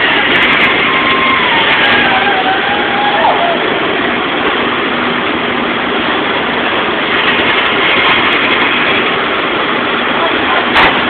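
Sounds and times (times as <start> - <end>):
welding arc crackling hiss: 4.4 - 11.0.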